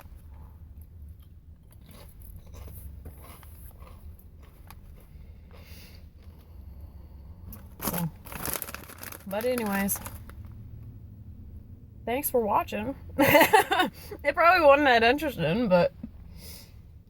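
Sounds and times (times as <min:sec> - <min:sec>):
steady low hum: 0:00.0 - 0:17.0
person crunching chips: 0:01.2 - 0:06.3, 0:07.5 - 0:10.4.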